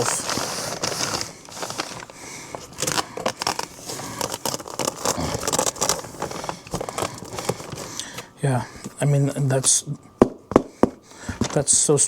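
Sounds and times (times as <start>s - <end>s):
velcro tearing and crackling: 2.8s - 6.1s.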